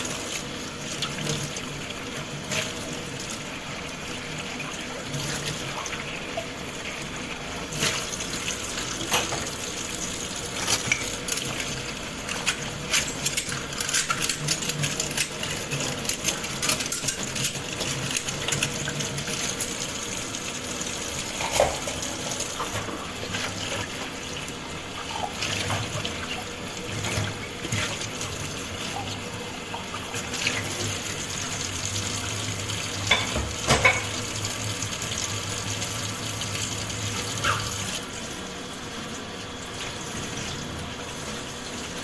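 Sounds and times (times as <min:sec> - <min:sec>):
tap water running into sink: 0:00.0 - 0:42.0
plates and cutlery clinking: 0:21.3 - 0:23.0, 0:33.1 - 0:34.2.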